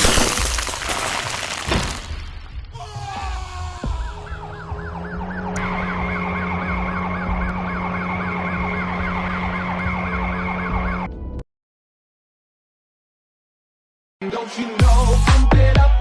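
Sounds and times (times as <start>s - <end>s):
warbling siren: 3.8s - 11.2s.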